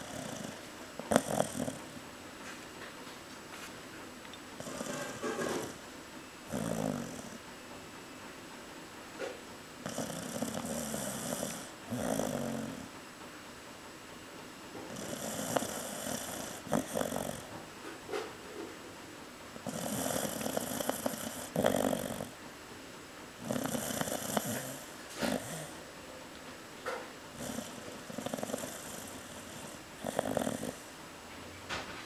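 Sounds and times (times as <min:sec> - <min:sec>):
dog snoring: 0:00.0 - 0:02.0, 0:04.6 - 0:05.8, 0:06.5 - 0:07.4, 0:09.2 - 0:12.9, 0:14.8 - 0:18.4, 0:19.6 - 0:22.4, 0:23.4 - 0:25.8, 0:26.9 - 0:31.0.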